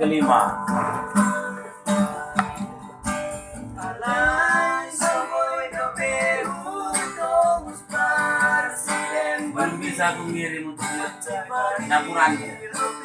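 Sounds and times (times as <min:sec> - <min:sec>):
acoustic guitar strumming: 0:00.0 - 0:13.0
person singing long notes: 0:03.8 - 0:09.9.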